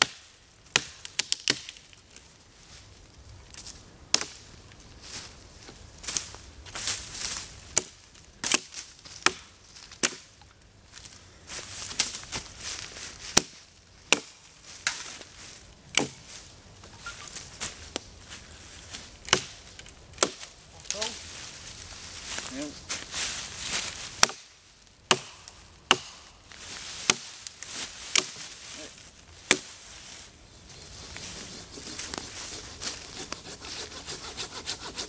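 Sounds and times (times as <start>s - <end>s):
axe chopping wood: 0.0s - 1.8s, 7.8s - 10.3s, 13.3s - 15.0s, 15.9s - 16.2s, 19.2s - 19.6s, 20.2s - 20.5s, 24.2s - 24.5s, 25.1s - 26.3s, 27.0s - 27.4s, 28.1s - 28.4s, 29.5s - 29.7s.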